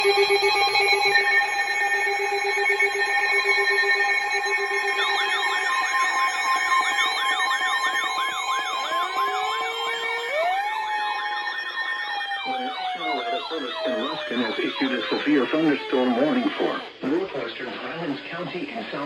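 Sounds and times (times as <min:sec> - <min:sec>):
steady siren tones: 0:00.5 - 0:17.0
siren rising in pitch: 0:04.8 - 0:17.0
electronic sirens warbling: 0:04.8 - 0:17.8
low fast siren warble: 0:08.0 - 0:16.8.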